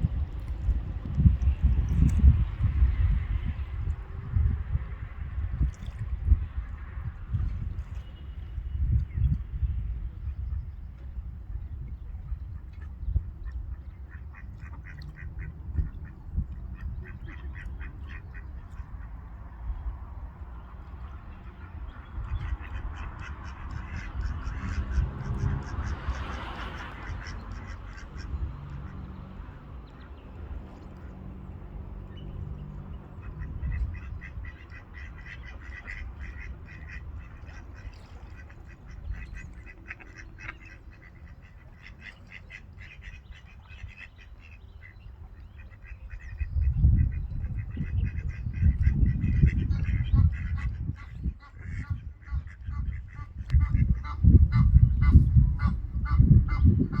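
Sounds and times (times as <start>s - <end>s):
steady low rumble: 0.0s - 57.0s
ducks quacking: 12.7s - 16.1s, 16.8s - 19.2s, 20.7s - 29.0s, 33.1s - 57.0s.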